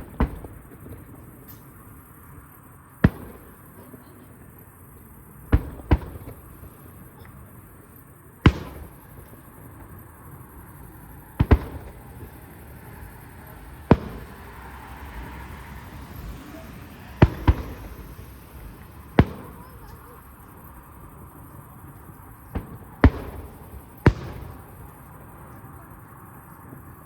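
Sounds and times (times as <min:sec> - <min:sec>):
firework shells bursting: 0:08.4 - 0:25.8.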